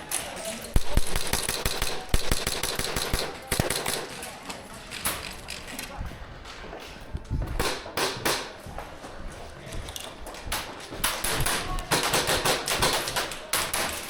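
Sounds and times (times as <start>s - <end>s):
airsoft gun shots: 0.8s - 4.1s
footsteps: 4.1s - 11.8s.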